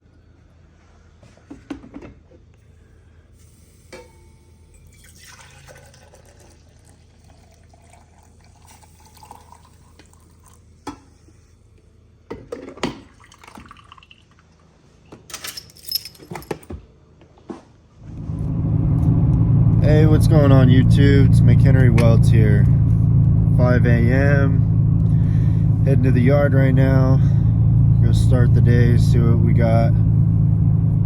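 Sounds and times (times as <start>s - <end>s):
low steady hum: 0.0s - 31.0s
water dripping and running: 4.8s - 10.8s, 13.0s - 14.7s.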